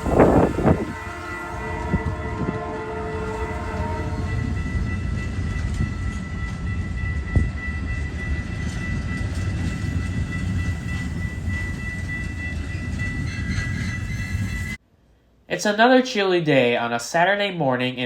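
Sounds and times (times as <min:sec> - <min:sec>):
train horn: 0:00.0 - 0:09.1
train rumbling on rails: 0:00.0 - 0:14.8.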